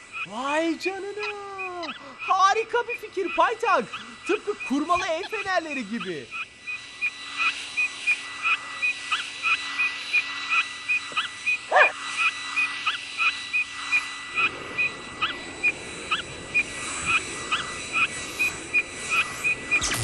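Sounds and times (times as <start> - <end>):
short high cartoon chirps: 19.8 - 20.0.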